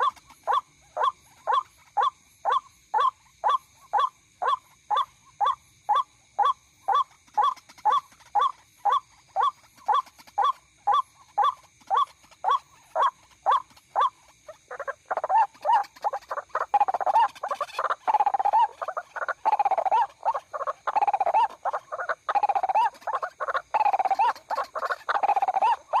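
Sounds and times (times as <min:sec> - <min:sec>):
waterhen calling: 0:00.0 - 0:00.2, 0:06.9 - 0:26.0.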